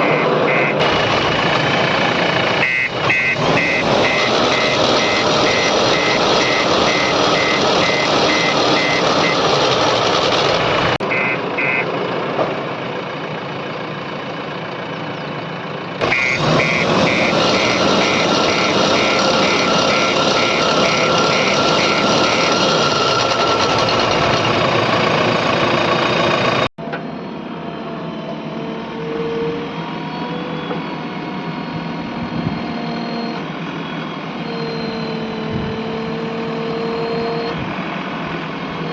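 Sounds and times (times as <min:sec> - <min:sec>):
reversing alarm beeping: 0:00.0 - 0:11.9, 0:16.0 - 0:26.7, 0:30.1 - 0:37.7
diesel engine running under load: 0:00.1 - 0:26.7.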